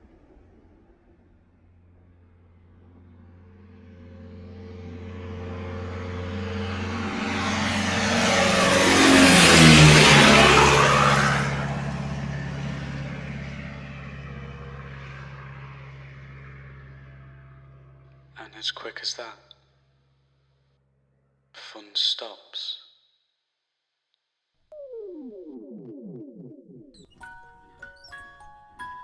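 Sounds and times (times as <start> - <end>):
car driving past: 0.0 - 18.3.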